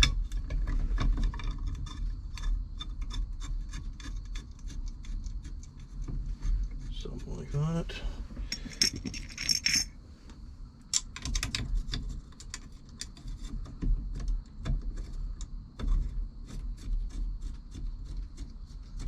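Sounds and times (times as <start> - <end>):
metal clicks and clinks: 8.5 - 10.0.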